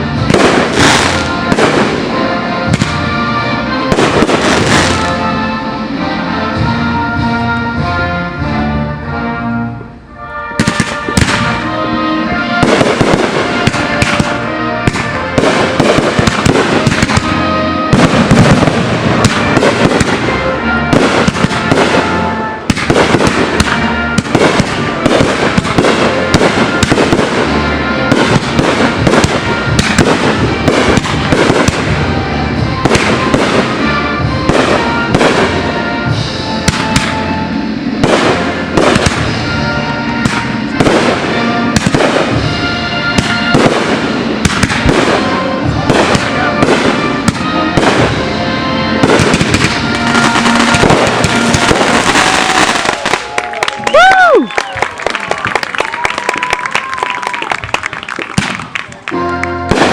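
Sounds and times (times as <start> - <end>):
music with sustained tones: 0.0 - 53.9, 59.0 - 59.9
rapid firework bursts: 0.2 - 3.1, 3.9 - 5.2, 12.6 - 35.8, 36.6 - 48.4, 49.0 - 53.4.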